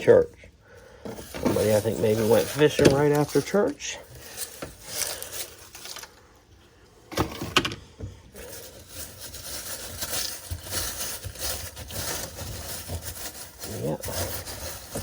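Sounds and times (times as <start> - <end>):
debris scraping and rustling: 1.1 - 6.2, 8.4 - 15.0.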